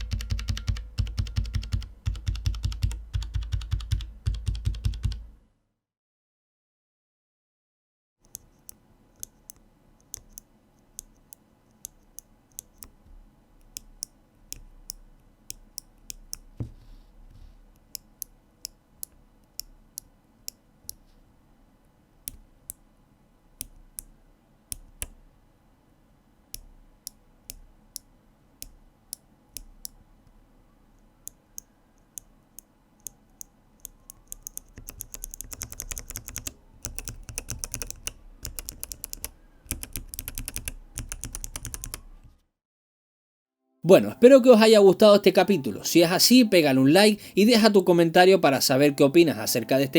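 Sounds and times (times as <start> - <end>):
mechanical keyboard clicks: 0.0 - 5.3, 33.4 - 42.3.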